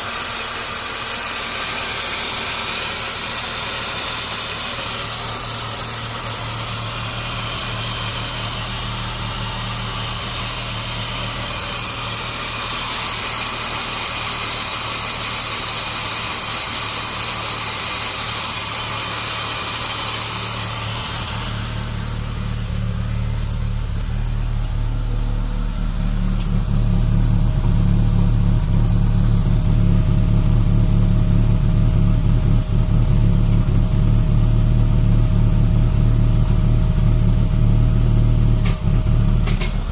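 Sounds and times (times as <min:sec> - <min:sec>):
car engine idling: 0:00.0 - 0:39.9
engine knocking and rumbling: 0:00.0 - 0:39.9.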